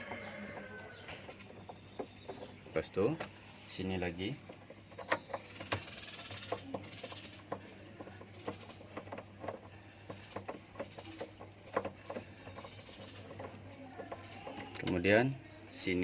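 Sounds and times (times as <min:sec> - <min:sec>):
tool and screws tapping: 0:00.0 - 0:15.4.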